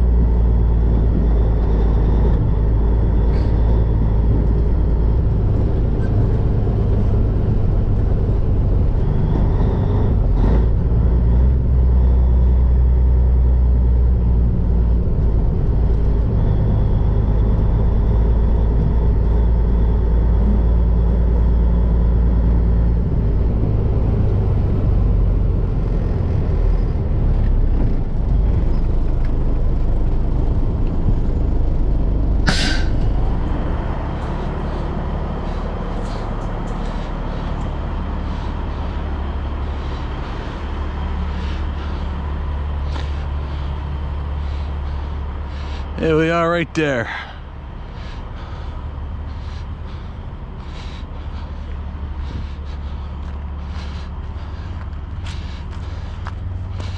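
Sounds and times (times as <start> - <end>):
diesel truck engine rumble: 0.0 - 56.9
air brake hiss: 32.5 - 33.2.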